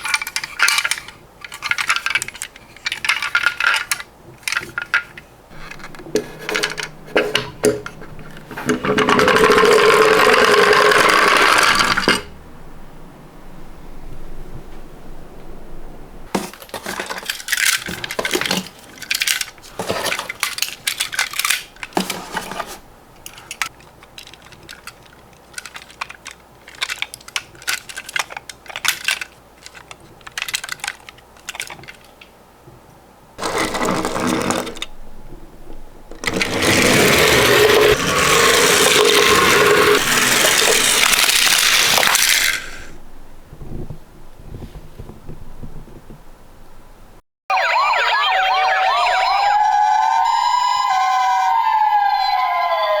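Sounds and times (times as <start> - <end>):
plastic clicks and rattles: 0.0 - 12.3, 16.4 - 32.3.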